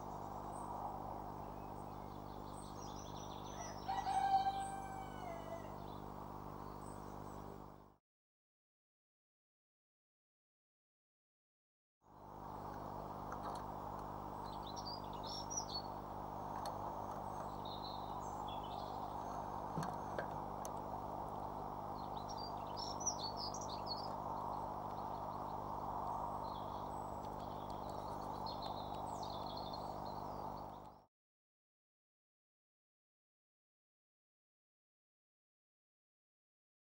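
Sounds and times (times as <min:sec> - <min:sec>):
small birds chirping: 0:00.0 - 0:07.8, 0:12.2 - 0:31.1
low electrical hum: 0:00.0 - 0:08.0, 0:12.1 - 0:31.1.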